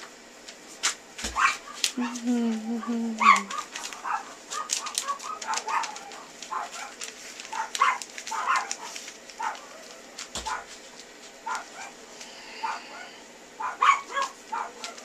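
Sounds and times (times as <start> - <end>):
puppies yipping and whining: 1.4 - 4.2.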